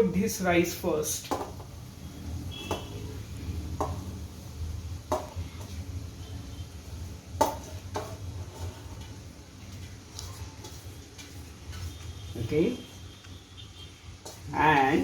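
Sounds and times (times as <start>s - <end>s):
utensil knocking on iron pan: 1.3s - 1.7s, 3.8s - 4.1s, 5.1s - 5.4s, 7.4s - 8.2s.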